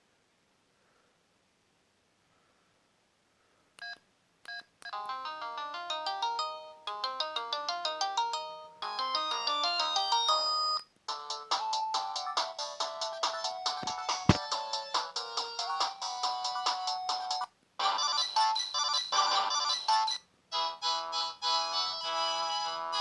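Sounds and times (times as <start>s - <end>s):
polyphonic phone ringtone: 5.0s - 10.8s, 17.8s - 20.2s.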